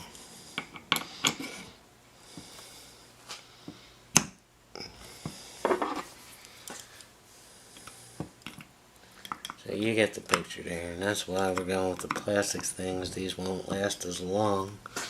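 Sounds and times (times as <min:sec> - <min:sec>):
parts clattering: 0:05.6 - 0:06.8.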